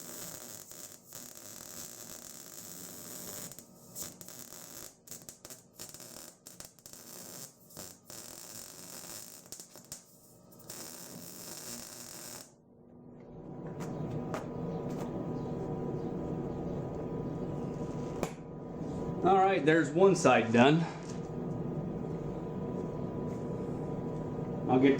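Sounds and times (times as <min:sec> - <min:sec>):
welder arc crackling and hissing: 0:00.0 - 0:12.6, 0:24.7 - 0:24.9
low hum: 0:12.7 - 0:24.9.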